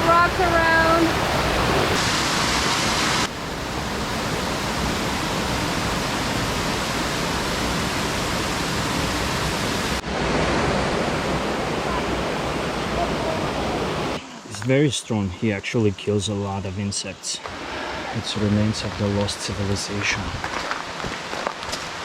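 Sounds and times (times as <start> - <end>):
water rushing over rocks: 0.0 - 15.0.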